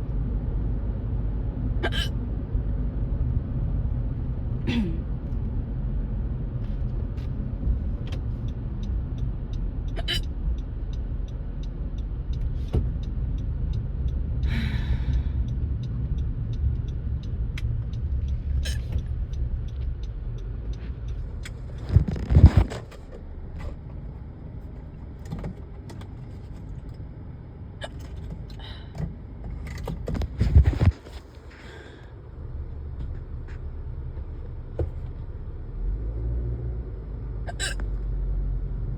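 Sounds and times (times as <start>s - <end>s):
road and engine rumble: 0.0s - 38.9s
faint regular ticking: 8.1s - 14.5s, 15.1s - 21.9s.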